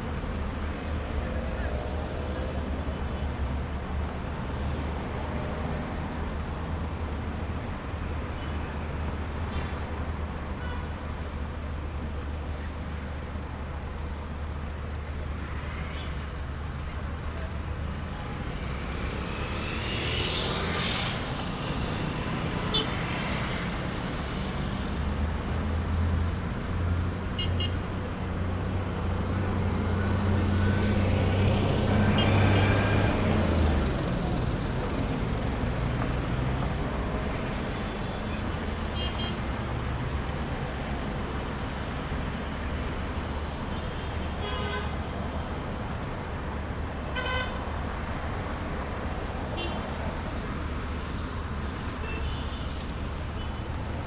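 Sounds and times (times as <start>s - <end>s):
vehicle engines passing: 11.9s - 54.0s
car horn beeps: 27.4s - 27.8s, 39.0s - 39.4s, 47.2s - 47.6s.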